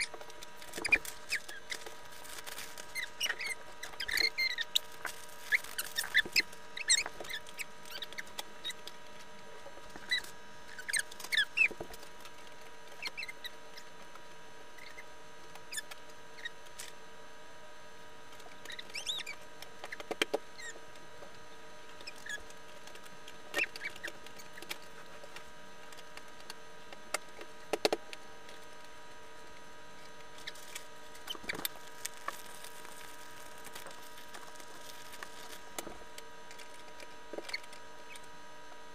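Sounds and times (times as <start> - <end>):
faint steady hum: 0.0 - 38.9
packaging rustling and clicking: 0.2 - 6.4, 30.4 - 35.9.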